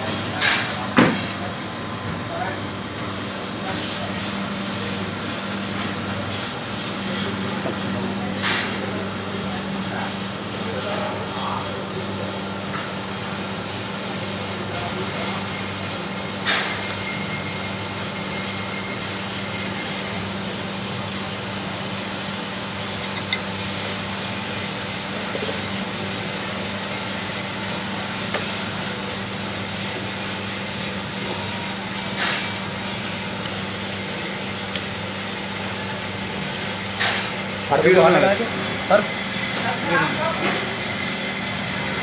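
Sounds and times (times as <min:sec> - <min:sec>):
low machine hum: 0:00.0 - 0:42.0.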